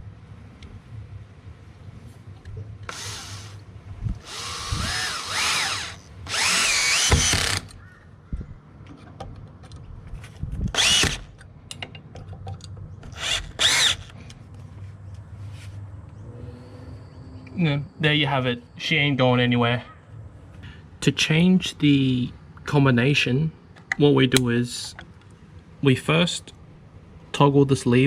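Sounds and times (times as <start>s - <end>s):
power drill driving screws: 2.9s - 3.6s, 4.2s - 7.8s, 10.7s - 11.3s, 13.1s - 14.2s.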